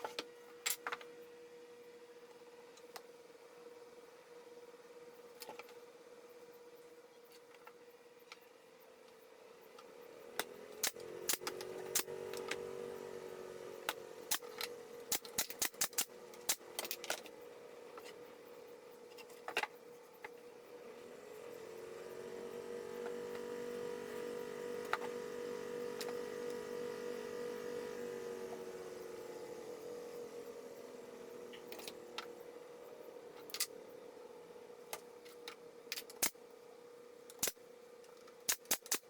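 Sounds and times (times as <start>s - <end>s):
small electric motor humming: 9.8s - 19.1s, 19.9s - 35.5s.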